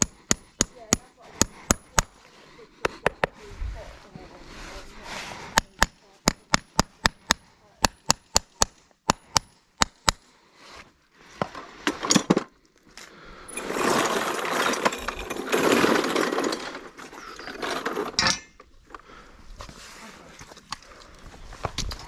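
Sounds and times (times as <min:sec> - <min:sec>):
rough continuous noise: 0:10.4 - 0:22.0.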